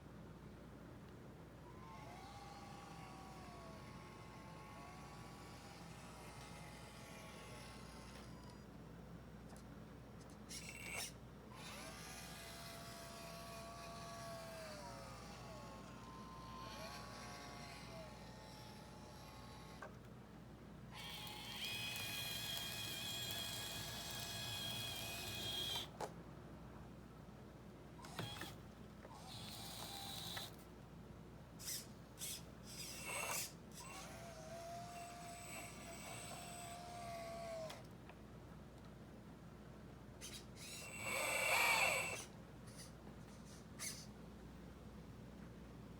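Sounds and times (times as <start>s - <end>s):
short clicks and whirs: 1.0s - 20.2s, 20.9s - 26.2s, 28.0s - 30.8s, 31.6s - 39.0s, 40.2s - 44.2s
electric pump whining: 1.6s - 8.5s, 10.6s - 19.9s, 20.9s - 26.0s, 28.0s - 30.6s, 31.6s - 37.8s.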